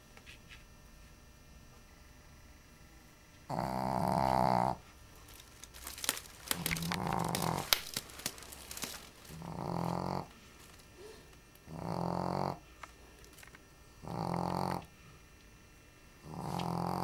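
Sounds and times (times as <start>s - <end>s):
dog snoring: 3.5s - 4.9s, 6.6s - 7.7s, 9.3s - 10.4s, 11.0s - 12.7s, 14.0s - 14.9s, 16.2s - 17.0s.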